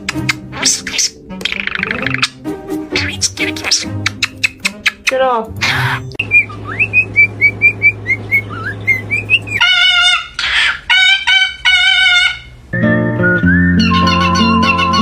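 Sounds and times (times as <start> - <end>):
parrot chirping: 0.0 - 12.7, 13.8 - 15.0
parrot whistling: 0.1 - 5.0, 5.6 - 12.6, 13.2 - 15.0
steady low hum: 6.0 - 11.7
parrot loud calls and screech: 9.5 - 12.6.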